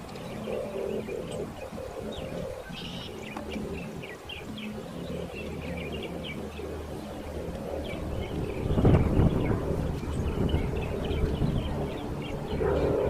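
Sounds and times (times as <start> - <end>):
low steady hum: 0.0 - 13.0
small birds chirping: 0.0 - 13.0.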